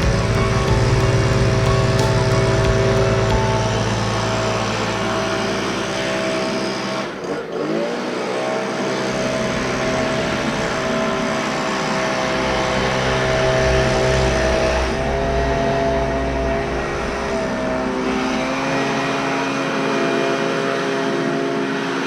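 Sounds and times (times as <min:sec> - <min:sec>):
lawn mower engine running: 0:00.0 - 0:20.0.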